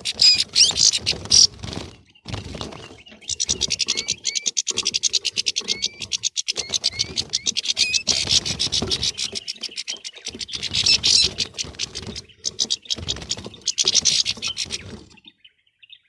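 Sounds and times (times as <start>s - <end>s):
finches chattering: 0.0s - 15.3s.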